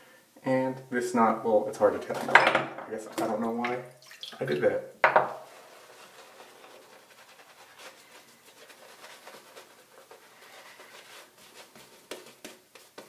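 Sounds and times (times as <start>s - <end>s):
shaving brush lathering on face: 5.5s - 12.6s.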